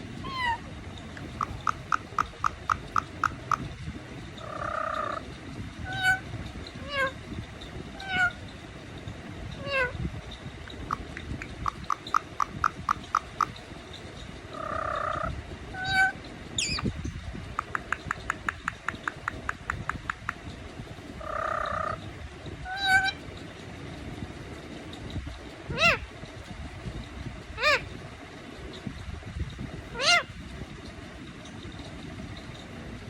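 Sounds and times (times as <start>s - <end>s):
parrot squawk: 0.2s - 0.6s, 1.2s - 3.7s, 5.8s - 7.2s, 8.0s - 8.4s, 9.6s - 10.0s, 10.9s - 13.5s, 14.6s - 16.8s, 22.7s - 23.2s, 25.7s - 26.0s, 27.6s - 27.8s, 29.9s - 30.3s
parrot rapid chirps: 1.2s - 3.7s, 5.9s - 7.1s, 10.7s - 13.6s, 14.6s - 16.9s, 17.6s - 20.4s
parrot mimicking cat meow: 5.9s - 6.2s, 8.0s - 8.4s, 9.6s - 10.0s, 30.0s - 30.3s.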